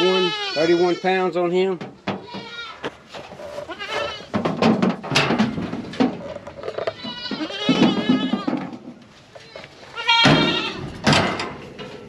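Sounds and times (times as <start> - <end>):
goat kids bleating: 0.0 - 4.4, 6.7 - 11.0.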